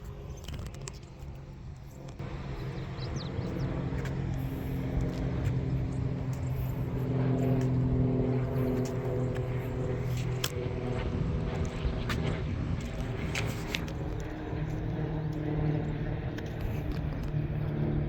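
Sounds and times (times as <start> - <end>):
vehicle engine hum approaching: 0.0 - 18.0.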